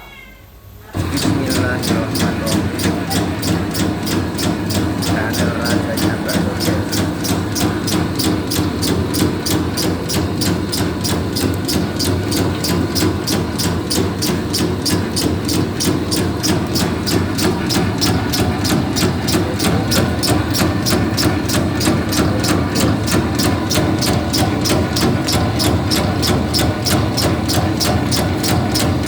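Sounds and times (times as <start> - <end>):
machine motor hum: 0.9 - 29.0
fast even mechanism clicking: 1.0 - 29.0.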